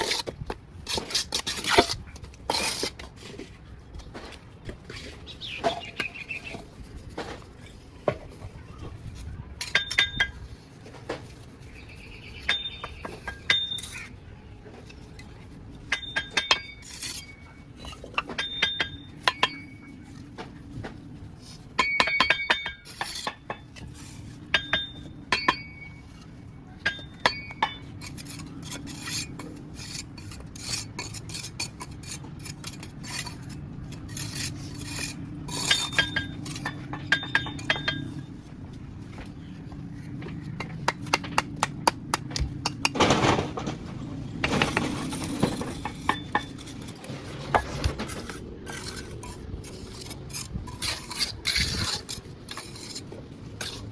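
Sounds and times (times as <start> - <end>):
steel trowel clinking on bricks: 0.0 - 3.2, 9.2 - 10.7, 11.6 - 14.2, 14.9 - 20.3, 21.5 - 38.4, 44.4 - 53.9.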